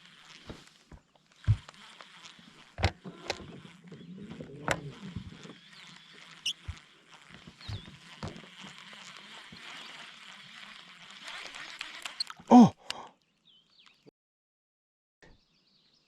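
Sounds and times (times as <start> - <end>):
scattered knocks and clicks: 4.4 - 8.7.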